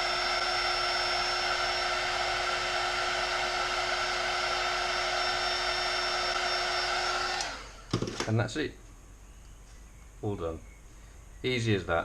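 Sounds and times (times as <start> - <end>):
hot air gun blowing: 0.0 - 7.9
fan whine: 0.0 - 12.0.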